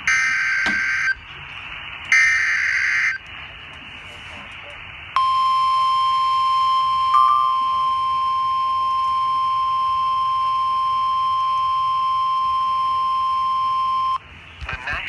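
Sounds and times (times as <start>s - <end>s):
loud steady alarm tone: 0.0s - 1.3s, 2.1s - 3.2s, 5.2s - 14.2s.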